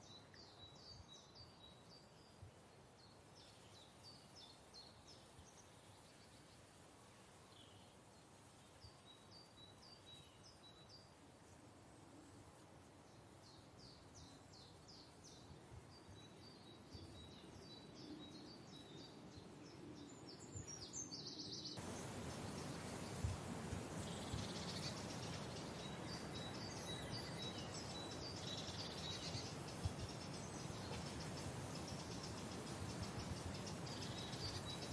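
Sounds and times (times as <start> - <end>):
outdoor background noise: 0.0 - 34.9
birds chirping: 13.4 - 34.9.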